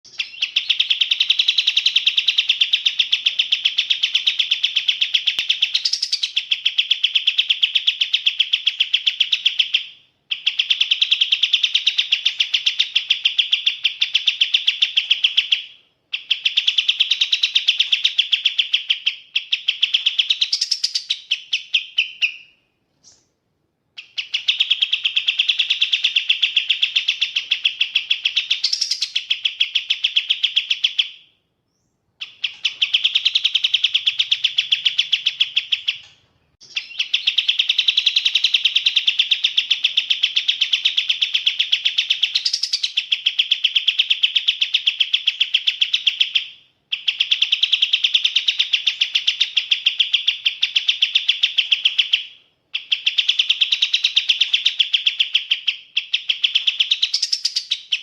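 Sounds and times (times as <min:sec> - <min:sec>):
bird trilling chatter: 0:00.1 - 0:06.8, 0:24.0 - 0:30.9, 0:32.2 - 0:43.0.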